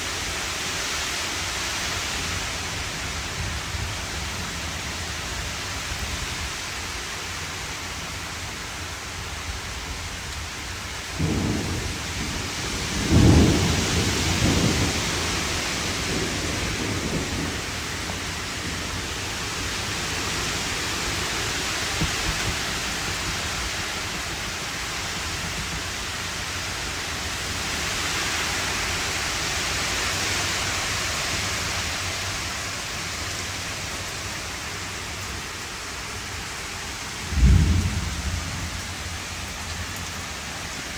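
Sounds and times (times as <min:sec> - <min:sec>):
heavy rain falling: 0:00.0 - 0:40.9
thunder rumbling: 0:11.1 - 0:26.4, 0:37.2 - 0:40.9.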